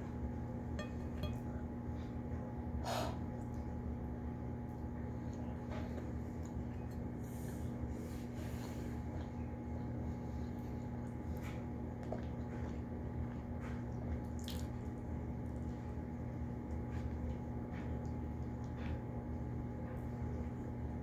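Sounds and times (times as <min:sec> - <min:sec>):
low hum: 0:00.0 - 0:02.5.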